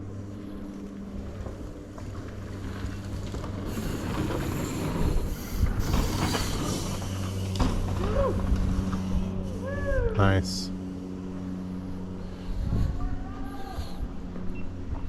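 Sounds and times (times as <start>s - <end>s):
steady low hum: 0.0s - 15.0s
bike tyres on dirt with knocks: 1.2s - 9.1s.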